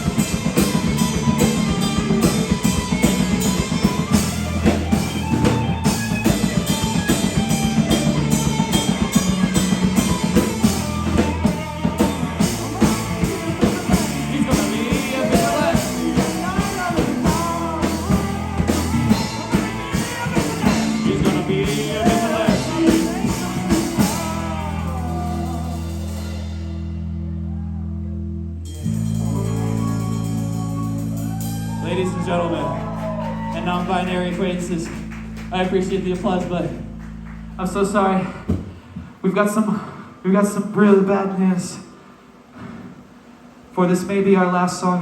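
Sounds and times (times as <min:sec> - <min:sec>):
drum kit beat: 0:00.0 - 0:26.9
live rock band playing: 0:00.0 - 0:27.5, 0:28.1 - 0:37.6.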